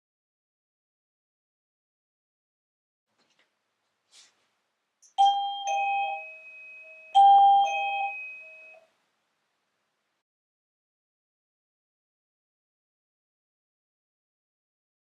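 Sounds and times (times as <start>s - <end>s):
two-note entry chime: 5.2s - 8.8s.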